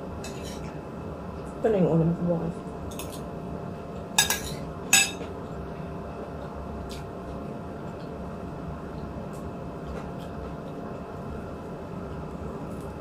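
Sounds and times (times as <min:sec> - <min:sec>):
low room hum: 0:00.0 - 0:13.0
dishware clinking: 0:04.2 - 0:05.2.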